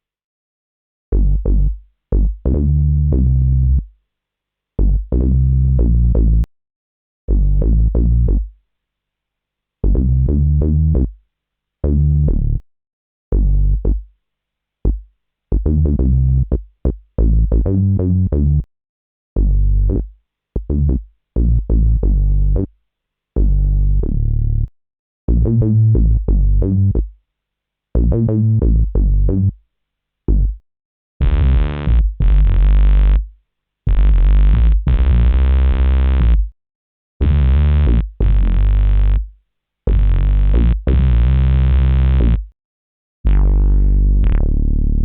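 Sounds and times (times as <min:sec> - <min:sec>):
punchy electronic bass notes: 0:01.1 - 0:03.8, 0:04.8 - 0:06.4, 0:07.3 - 0:08.5, 0:09.8 - 0:11.1, 0:11.8 - 0:12.6, 0:13.3 - 0:14.0, 0:15.5 - 0:16.6, 0:17.2 - 0:18.6, 0:19.4 - 0:22.7, 0:23.4 - 0:24.7, 0:25.3 - 0:27.0, 0:28.0 - 0:29.6, 0:30.3 - 0:30.6, 0:31.2 - 0:33.3, 0:33.9 - 0:36.5, 0:37.2 - 0:39.3, 0:39.9 - 0:42.5, 0:43.2 - 0:45.0.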